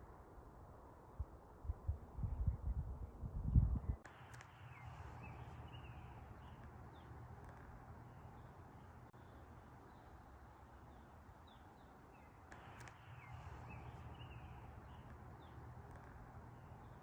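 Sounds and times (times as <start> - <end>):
small birds chirping: 3.8 - 17.0
sharp clicks: 12.4 - 14.0.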